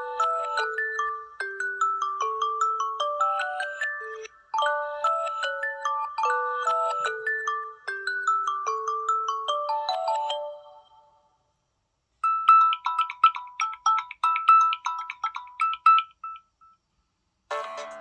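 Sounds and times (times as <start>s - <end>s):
dense ringtone: 17.5s - 18.0s
descending ringtone melody: 17.5s - 18.0s
two-note ring pattern: 17.5s - 18.0s.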